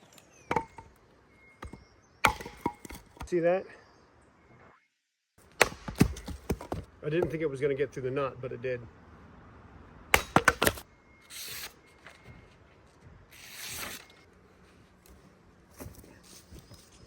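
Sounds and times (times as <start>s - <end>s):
sharp knocks clattering: 0.4s - 1.0s, 1.6s - 3.4s, 5.6s - 7.4s, 10.2s - 10.8s.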